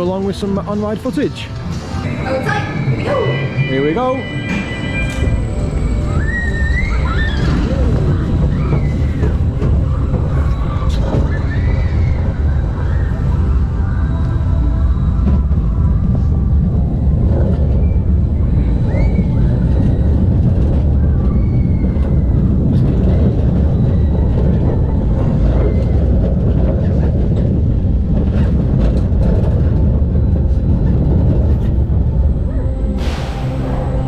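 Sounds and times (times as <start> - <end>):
ride low rumble: 0.0 - 34.0
faint high squeals: 2.0 - 14.2, 17.3 - 26.5.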